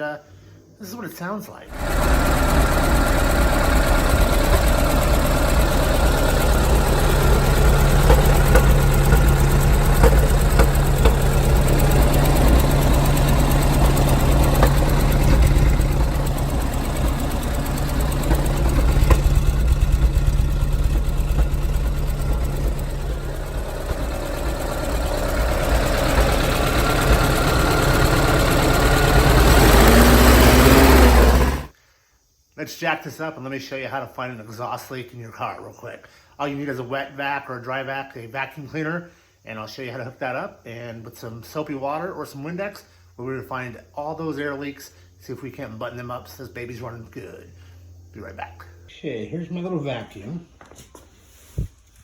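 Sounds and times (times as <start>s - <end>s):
car engine running: 1.7s - 31.7s.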